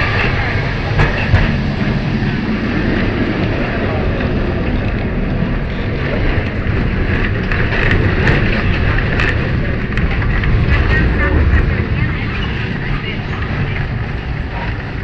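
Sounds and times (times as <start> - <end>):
tram rumbling on rails: 0.0 - 15.0.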